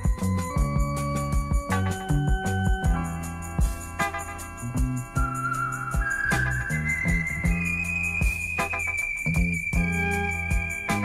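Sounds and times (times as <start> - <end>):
high ticking percussion: 0.0 - 11.0
kick drum and bass: 0.0 - 11.0
held synth tones: 5.0 - 11.0.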